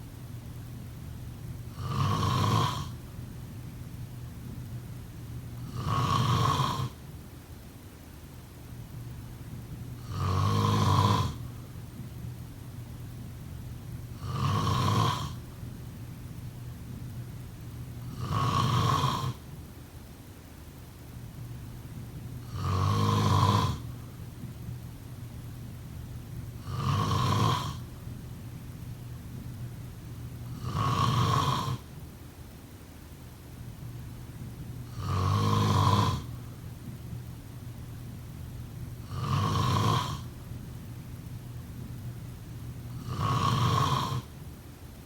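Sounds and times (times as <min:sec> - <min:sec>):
person snoring: 0:01.7 - 0:03.0, 0:05.6 - 0:07.0, 0:10.0 - 0:11.5, 0:14.2 - 0:15.4, 0:18.1 - 0:19.4, 0:22.4 - 0:23.9, 0:26.6 - 0:27.8, 0:30.5 - 0:31.9, 0:34.9 - 0:36.3, 0:39.0 - 0:40.3, 0:42.9 - 0:44.3.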